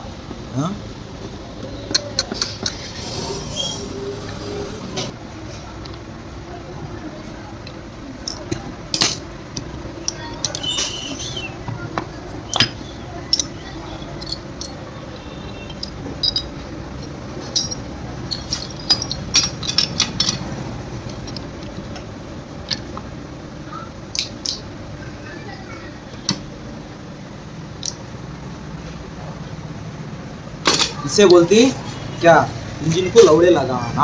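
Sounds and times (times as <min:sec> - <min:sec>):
steady background hum: 0:00.0 - 0:34.0
metallic clinks of tools: 0:08.3 - 0:09.2, 0:14.2 - 0:14.9, 0:15.7 - 0:21.4.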